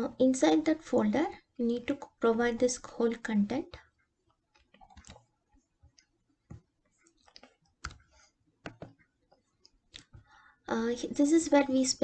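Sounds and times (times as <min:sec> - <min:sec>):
computer keys clicking: 0:04.5 - 0:05.3, 0:05.9 - 0:09.0.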